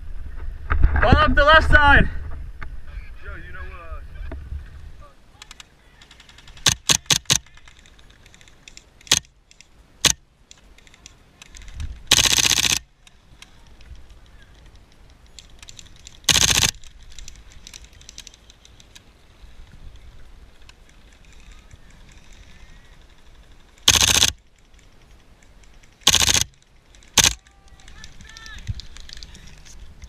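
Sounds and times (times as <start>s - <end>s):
airsoft gun shots: 26.1s - 26.5s, 27.2s - 27.4s.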